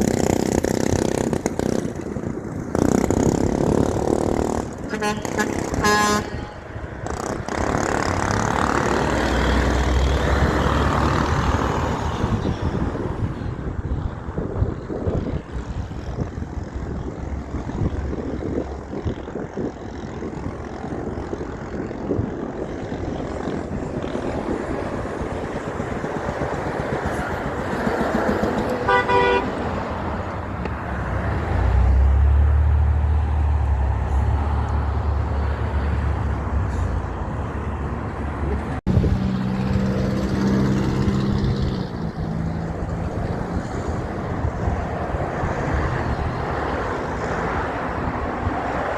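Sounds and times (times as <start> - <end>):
heavy trucks driving past: 0.0 - 48.9
truck horn blasts: 4.7 - 7.3, 28.8 - 30.0.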